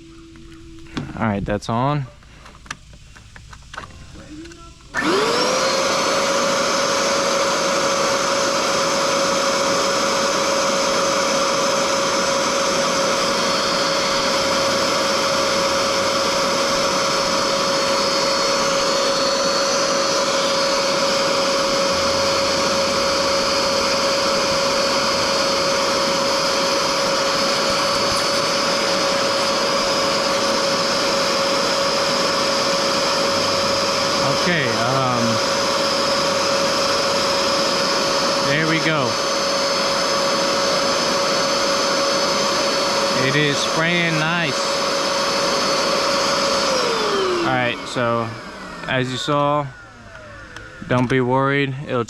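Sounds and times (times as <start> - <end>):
suction motor whining: 3.6 - 52.0.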